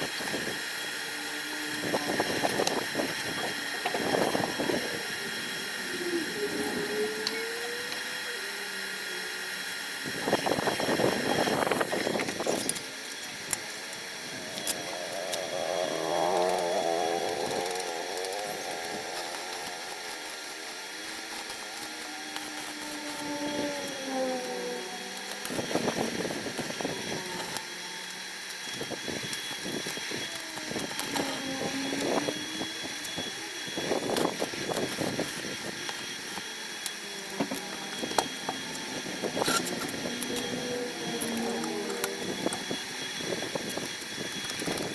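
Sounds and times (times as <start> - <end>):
motor whining: 0.0 - 44.9.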